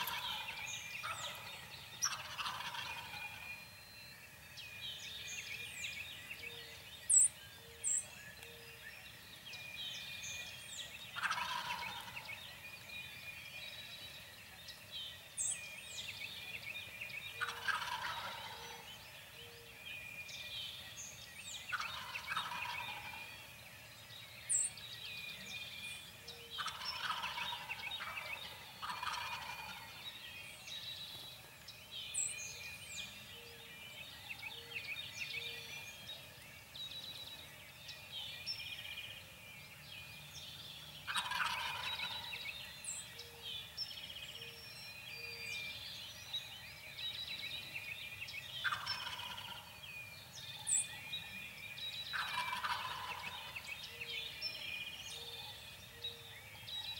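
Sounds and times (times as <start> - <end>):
turkey gobbling: 0.0 - 1.5, 2.1 - 3.5, 11.2 - 12.3, 17.4 - 18.8, 21.7 - 23.2, 26.6 - 30.0, 41.0 - 42.3, 48.6 - 49.7, 52.1 - 53.7
small birds chirping: 0.0 - 56.9.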